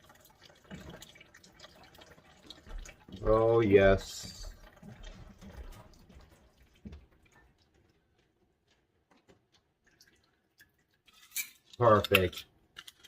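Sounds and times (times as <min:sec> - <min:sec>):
liquid trickling into glass: 0:09.8 - 0:11.4.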